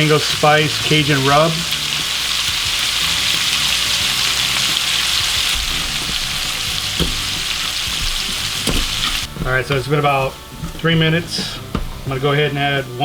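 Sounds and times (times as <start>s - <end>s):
vegetables sizzling in oil: 0.0s - 9.4s
utensil knock: 4.7s - 9.9s, 10.6s - 12.2s.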